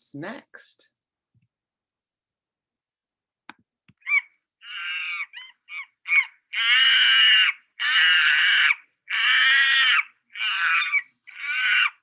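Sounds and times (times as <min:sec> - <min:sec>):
monkey calls: 0:04.0 - 0:12.0.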